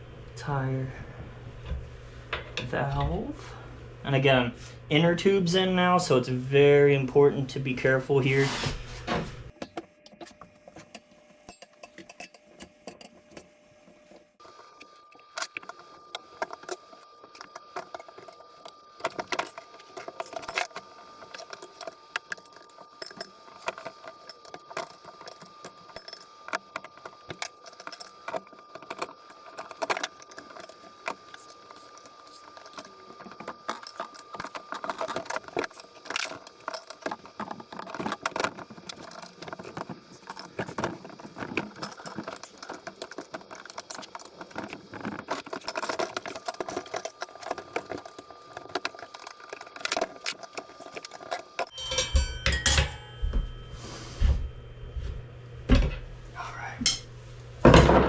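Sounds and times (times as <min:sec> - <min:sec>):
faint steady whine: 0:09.1 - 0:57.8
tire irons clinking on metal rim: 0:15.4 - 0:53.2.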